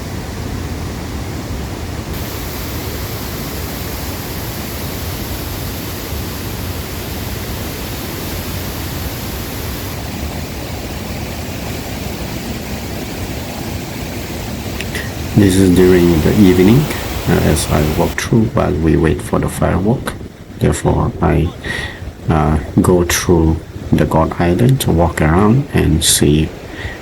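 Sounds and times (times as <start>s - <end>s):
water rushing over rocks: 0.0s - 27.0s.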